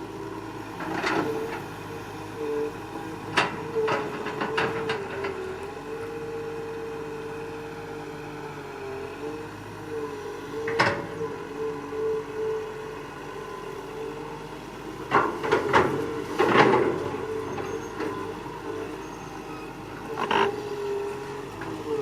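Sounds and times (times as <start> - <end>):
excavator engine and hydraulic drone: 0.0 - 22.0
excavator knocks and clunks: 3.2 - 5.6, 10.6 - 11.3, 14.9 - 18.4.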